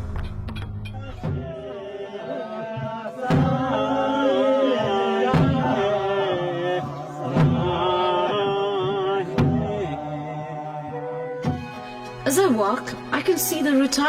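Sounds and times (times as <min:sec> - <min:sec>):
drum beats: 0:00.0 - 0:02.0, 0:02.6 - 0:10.1.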